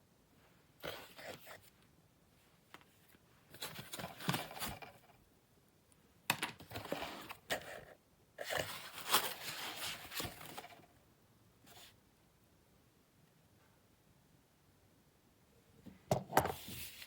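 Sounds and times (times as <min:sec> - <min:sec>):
handling rustling and clicks: 0:02.7 - 0:05.2, 0:06.3 - 0:10.9.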